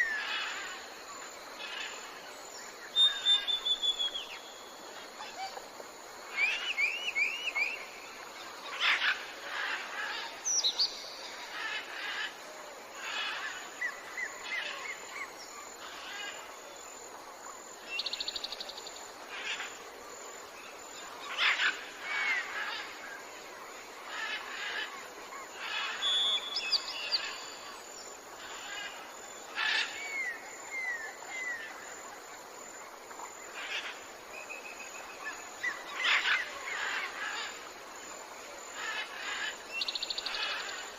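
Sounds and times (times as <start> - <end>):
background hiss of ambience: 0.0 - 40.9
songbirds chirping and whistling: 1.6 - 12.4, 24.1 - 32.0, 33.6 - 37.6.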